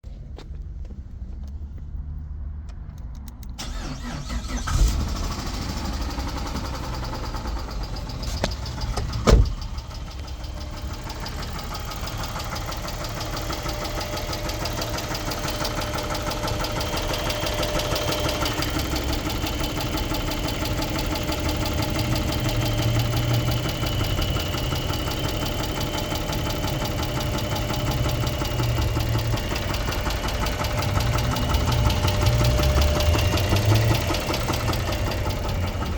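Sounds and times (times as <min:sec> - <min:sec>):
car engine knocking: 0:03.7 - 0:35.9.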